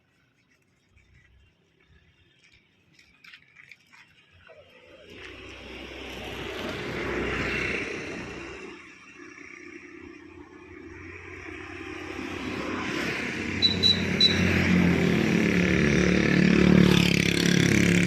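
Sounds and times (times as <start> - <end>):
vehicle passing by: 4.7 - 18.0.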